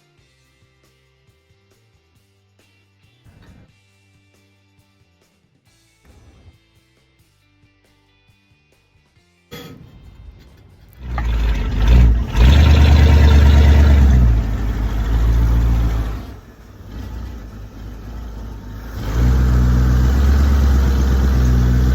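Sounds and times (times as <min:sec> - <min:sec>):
engine running and revving: 0:10.9 - 0:21.9.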